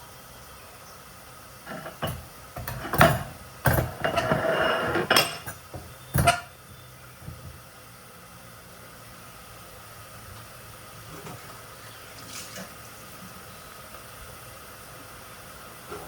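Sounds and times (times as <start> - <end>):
scraping: 1.7 - 6.5
dishes and utensils clinking: 1.7 - 6.6.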